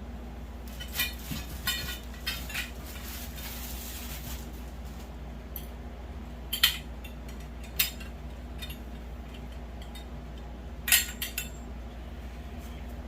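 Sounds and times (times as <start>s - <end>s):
steady low hum: 0.0s - 13.0s
metal poles clinking: 6.5s - 11.7s.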